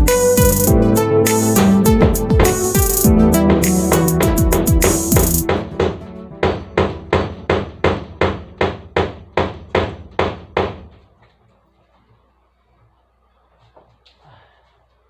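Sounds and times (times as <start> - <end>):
hammer blows: 0.4 - 11.0.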